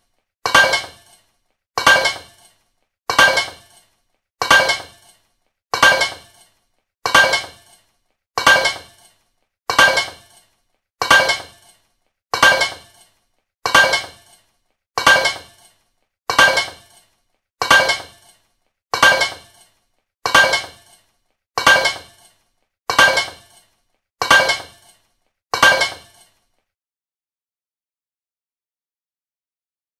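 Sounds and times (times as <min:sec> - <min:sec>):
metal pipe clanging: 0:00.5 - 0:11.8, 0:12.4 - 0:26.4.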